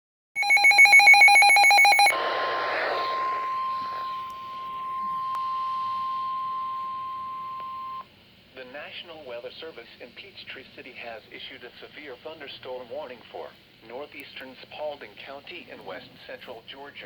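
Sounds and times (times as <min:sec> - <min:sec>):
rapid electronic beeping: 0:00.4 - 0:06.4
steady warning alarm tone: 0:00.4 - 0:08.1
radio static: 0:00.5 - 0:04.6.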